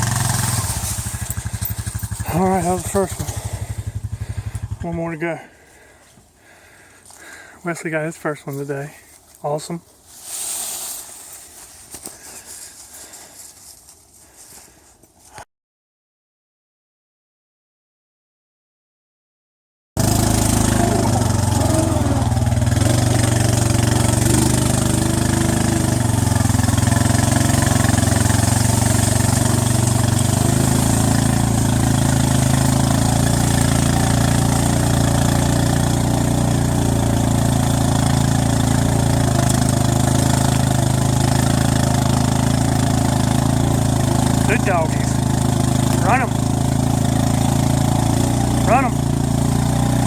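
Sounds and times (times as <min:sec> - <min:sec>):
engine running: 0:00.0 - 0:09.0, 0:20.0 - 0:50.0.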